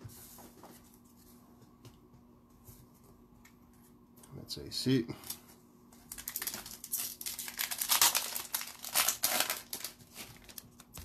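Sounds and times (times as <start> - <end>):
wrapper crinkling: 6.0 - 11.0.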